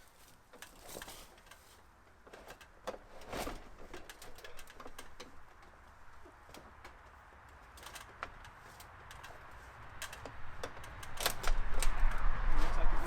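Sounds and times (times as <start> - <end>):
scraping rustle: 0.0 - 13.0.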